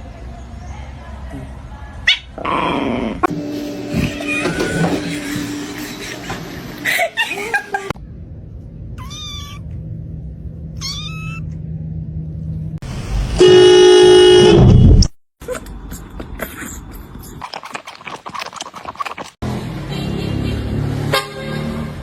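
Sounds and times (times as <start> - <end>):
loud kitten cry: 9.0 - 9.6, 10.8 - 11.4
kitten meowing: 9.0 - 9.7, 10.8 - 11.5.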